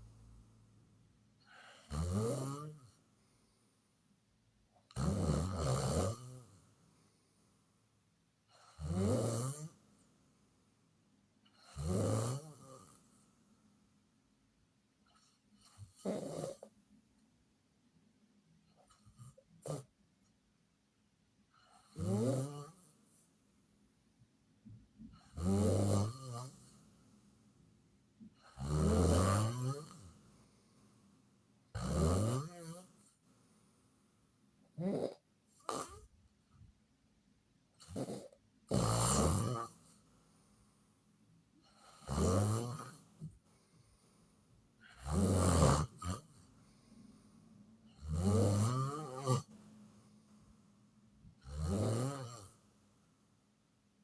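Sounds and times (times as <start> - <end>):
quiet breathing: 0.0 - 2.0, 2.7 - 4.3, 6.4 - 8.8, 29.8 - 31.7, 32.7 - 34.8, 39.8 - 42.0, 42.8 - 45.0, 45.9 - 48.0, 49.0 - 51.4
loud snoring: 1.4 - 3.0, 4.9 - 6.6, 8.5 - 9.8, 11.6 - 13.1, 15.2 - 16.7, 18.9 - 19.9, 21.6 - 22.9, 25.2 - 26.9, 28.4 - 30.2, 31.7 - 33.0, 34.8 - 36.1, 37.8 - 39.9, 41.6 - 43.4, 44.8 - 46.5, 47.9 - 49.6, 51.4 - 52.6.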